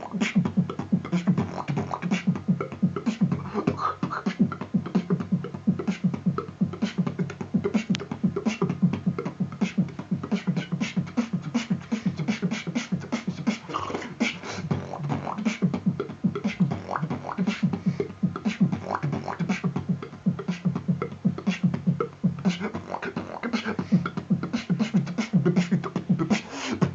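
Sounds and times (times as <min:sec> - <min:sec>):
low buzzing bass hum: 0:00.0 - 0:26.3
beatboxing: 0:00.0 - 0:26.9.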